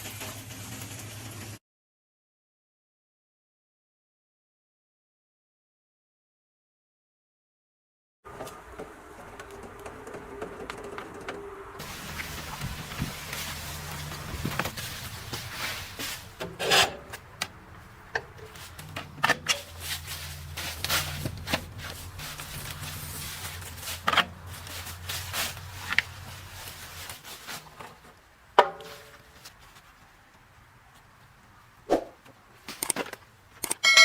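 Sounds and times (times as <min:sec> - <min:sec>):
wood splitter engine hum: 0:08.3 - 0:27.1
wood cracking and creaking: 0:08.3 - 0:30.4.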